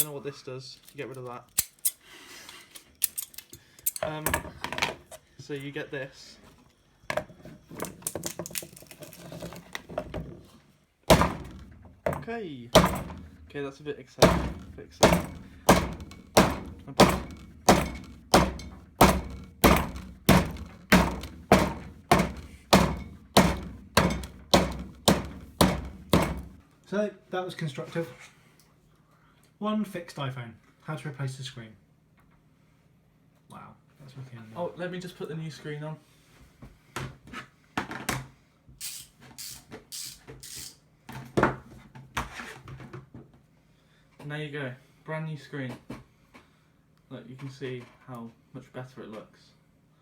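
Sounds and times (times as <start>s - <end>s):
loud sharp knock: 11.1s - 13.4s, 14.2s - 26.6s
phone being struck with heavy thunks: 11.1s - 13.4s, 14.2s - 26.6s
sharp clicks and knocks: 11.1s - 13.5s, 14.2s - 26.6s.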